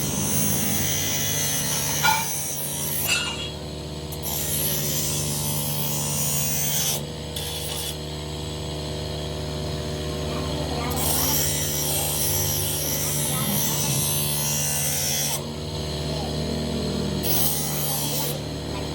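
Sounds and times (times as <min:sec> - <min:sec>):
workshop machinery humming: 0:00.0 - 0:18.9
ringing metal clanks: 0:02.0 - 0:02.4, 0:03.0 - 0:03.5.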